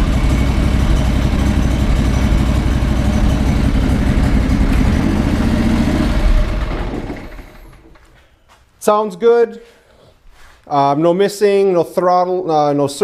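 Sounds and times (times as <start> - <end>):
lawn tractor engine running: 0.0 - 8.1.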